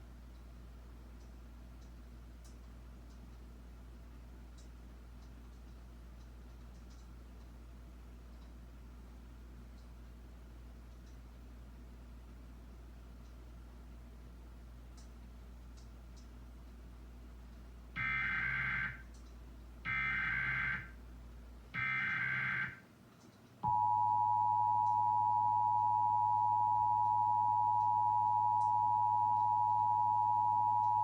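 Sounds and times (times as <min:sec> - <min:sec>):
buzzy digital bursts: 0:18.0 - 0:19.0, 0:19.9 - 0:20.9, 0:21.8 - 0:22.8
two-tone attention signal: 0:23.6 - 0:31.0.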